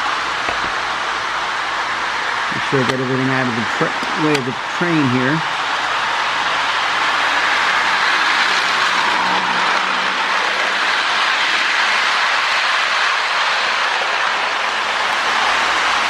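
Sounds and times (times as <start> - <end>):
toy train motors whirring: 0.0 - 16.0.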